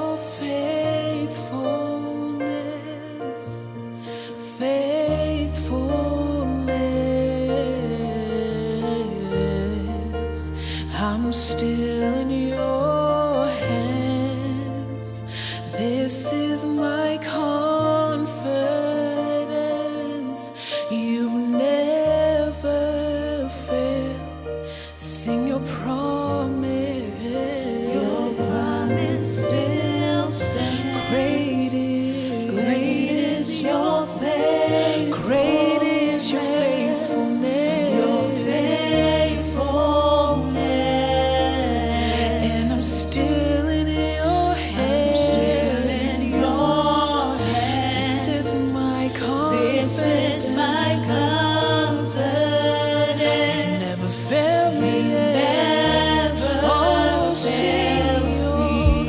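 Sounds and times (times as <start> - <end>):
person singing with vibrato: 0.0 - 59.0
sustained keyboard chords: 25.3 - 59.0
low keyboard notes: 54.9 - 59.0
held bass: 56.0 - 59.0.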